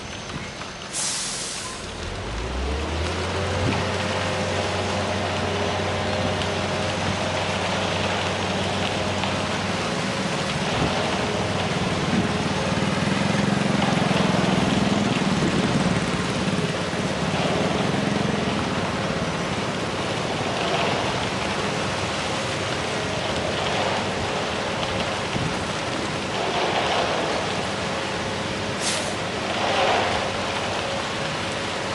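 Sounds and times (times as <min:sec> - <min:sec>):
heavy machinery engine running: 0:00.0 - 0:31.9
dense rushing hiss: 0:00.9 - 0:03.0, 0:23.7 - 0:31.9.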